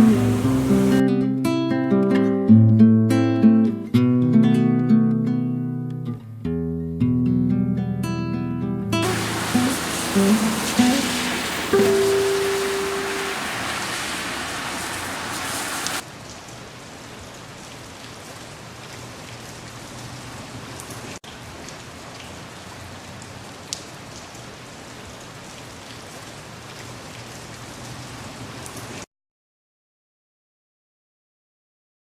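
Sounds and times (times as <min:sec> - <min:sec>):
individual raindrops: 0:00.0 - 0:01.0, 0:09.0 - 0:29.0
rain falling: 0:00.0 - 0:01.0, 0:09.0 - 0:29.1.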